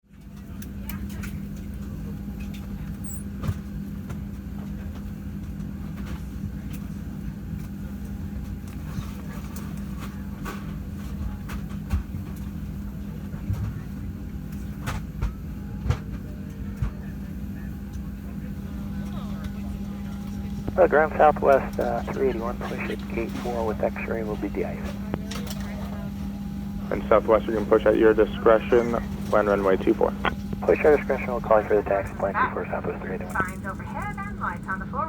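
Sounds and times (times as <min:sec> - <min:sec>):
ventilation air running: 0:01.2 - 0:35.0
aircraft cabin hum: 0:18.2 - 0:35.0.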